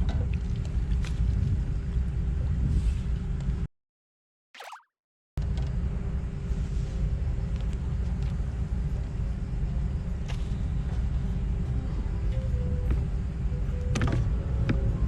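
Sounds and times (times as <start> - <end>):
swoosh falling in pitch: 4.6 - 4.8
faint constant hum: 5.4 - 15.0
low outdoor rumble: 5.4 - 15.0.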